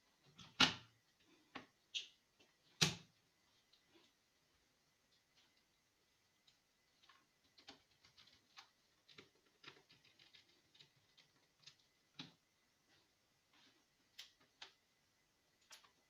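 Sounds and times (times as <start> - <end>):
faint clicks and taps: 5.0 - 16.0.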